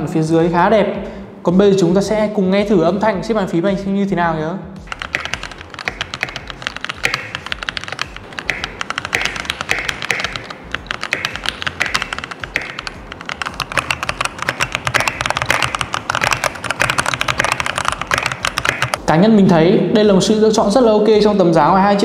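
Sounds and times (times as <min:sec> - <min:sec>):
mechanical keyboard typing: 0:04.9 - 0:19.0.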